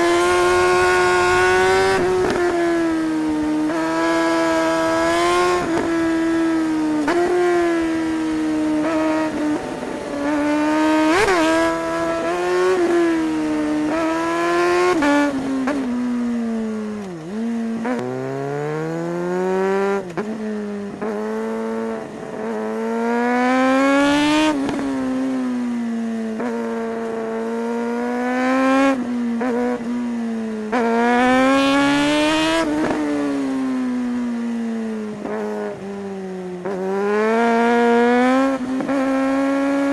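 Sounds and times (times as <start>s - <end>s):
motorcycle engine revving through gears: 0.0s - 39.9s.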